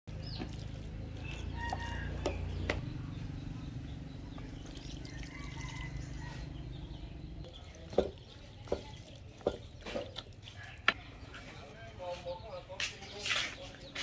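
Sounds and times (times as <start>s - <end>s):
puppies lapping and chewing: 0.1s - 2.7s, 4.4s - 11.7s.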